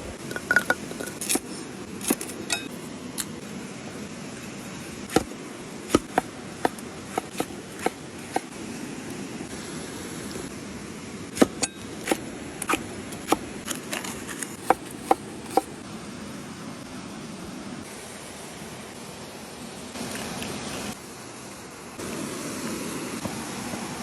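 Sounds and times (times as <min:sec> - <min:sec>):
steady hiss: 0:00.0 - 0:24.0
knife chopping on cutting board: 0:05.9 - 0:08.5, 0:14.3 - 0:15.7.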